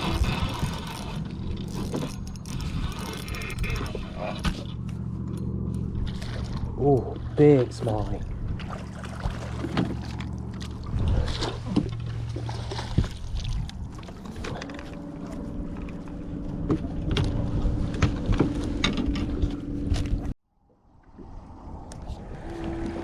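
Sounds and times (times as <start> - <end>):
fishing gear clicks and knocks: 0.0 - 6.8
higher-pitched hum: 0.0 - 20.3
boat motor humming: 0.0 - 20.4, 21.4 - 23.0.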